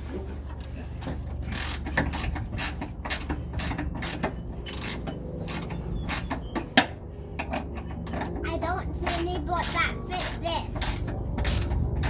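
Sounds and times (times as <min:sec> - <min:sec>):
ratchet wrench clicking: 0:01.4 - 0:06.5, 0:09.0 - 0:12.0.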